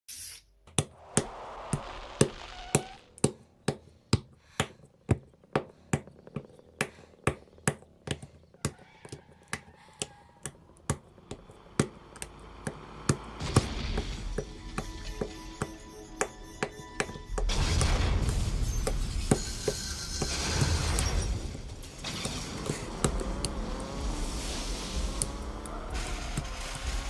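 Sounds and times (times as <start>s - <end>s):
sharp snap-like clicks beat: 10.8s - 21.2s.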